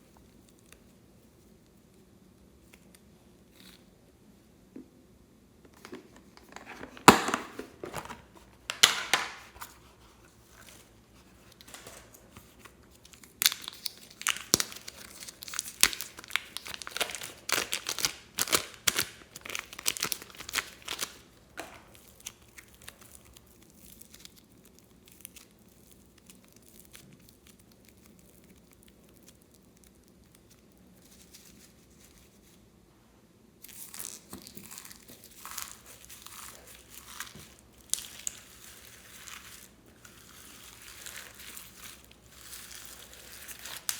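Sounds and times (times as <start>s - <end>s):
slime crackling and popping: 11.6s - 31.7s, 33.6s - 43.9s.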